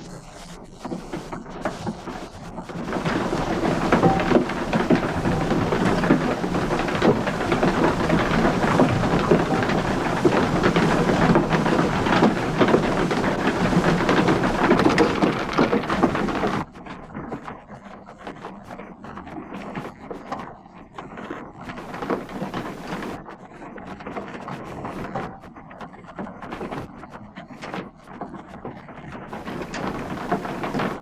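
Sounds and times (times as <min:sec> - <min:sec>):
knocks and rattles: 0:00.8 - 0:16.7, 0:21.8 - 0:23.2, 0:29.3 - 0:31.0.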